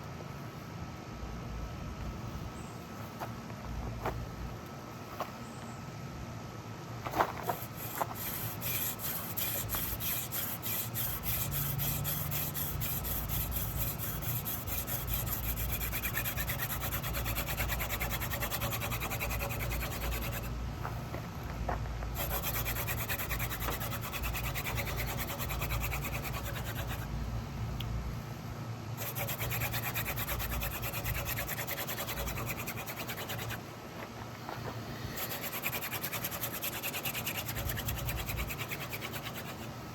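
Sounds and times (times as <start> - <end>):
hands rubbing on spindle: 7.1 - 21.1, 34.4 - 39.6
wood rubbing on wood: 7.1 - 27.0, 29.0 - 33.6, 34.5 - 39.7.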